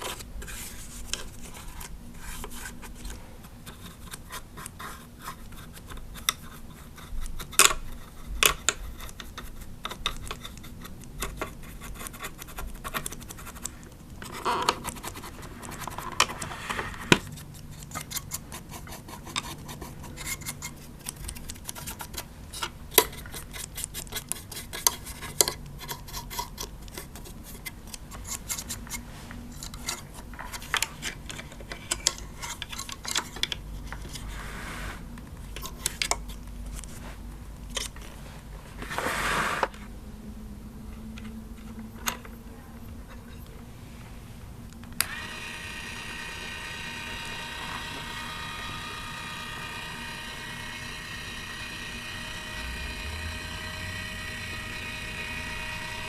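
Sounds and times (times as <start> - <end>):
brush scratching over plastic: 0.0 - 36.0, 37.8 - 39.9.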